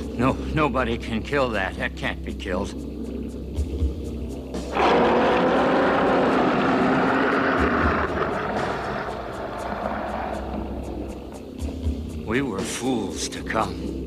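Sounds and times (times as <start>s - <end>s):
deep dinosaur roar: 4.7s - 11.0s.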